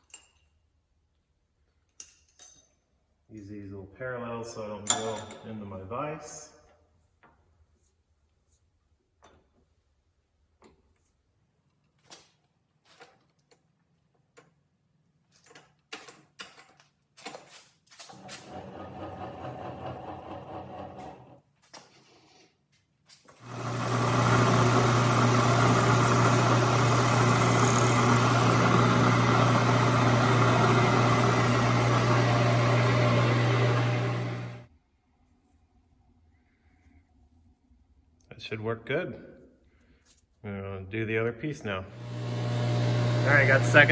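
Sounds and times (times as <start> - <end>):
milling machine drilling steel: 18.2 - 21.3, 23.4 - 34.6, 41.9 - 43.9.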